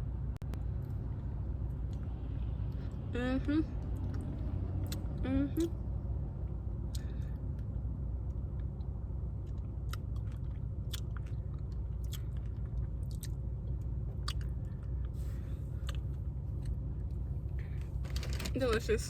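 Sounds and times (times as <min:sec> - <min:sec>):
steady low hum: 0:00.0 - 0:19.0
person biting and chewing: 0:09.4 - 0:13.4, 0:14.2 - 0:14.8.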